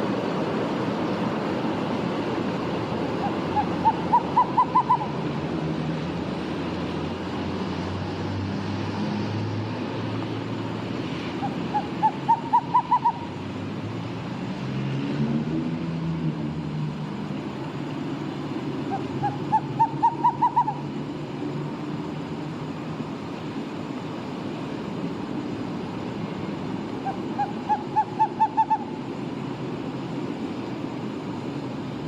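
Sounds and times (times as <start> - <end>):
owl hooting: 3.0 - 5.3, 11.3 - 13.4, 18.8 - 21.0, 27.0 - 29.0.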